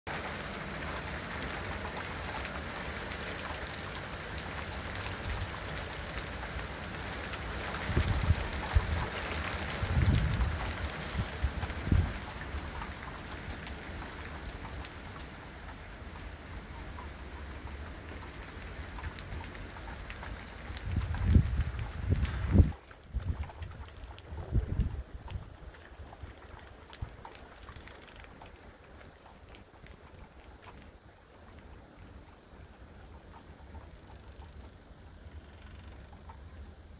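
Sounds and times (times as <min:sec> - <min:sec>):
hail pelting down: 0:00.1 - 0:36.9
wind buffeting microphone: 0:07.6 - 0:13.0, 0:20.6 - 0:27.6.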